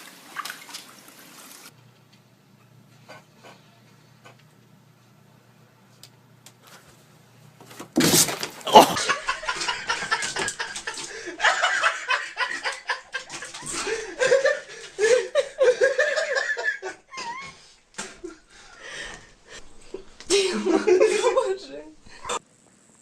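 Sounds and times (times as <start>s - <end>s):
people laughing: 8.7s - 19.1s, 19.9s - 22.4s.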